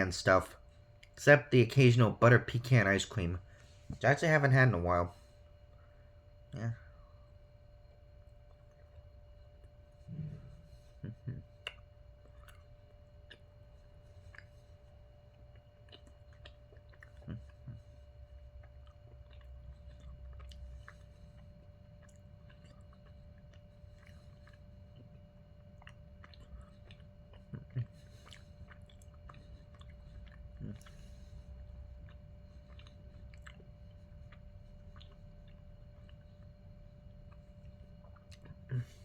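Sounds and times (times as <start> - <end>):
person chewing: 8.2 - 39.0.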